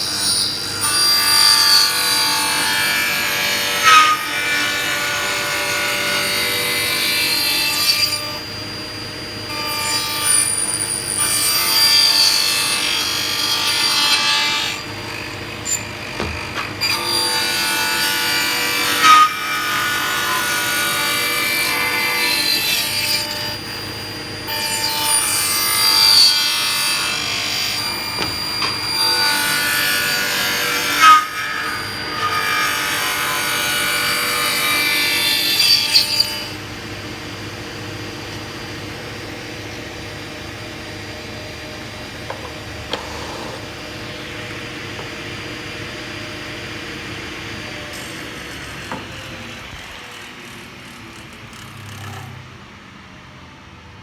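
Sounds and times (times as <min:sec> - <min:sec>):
power saw cutting wood: 0:00.0 - 0:52.9.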